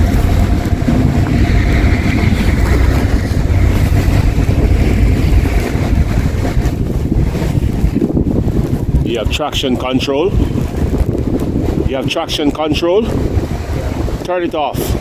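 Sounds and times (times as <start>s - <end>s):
car engine running: 0.0s - 7.2s
wind buffeting microphone: 0.0s - 15.0s.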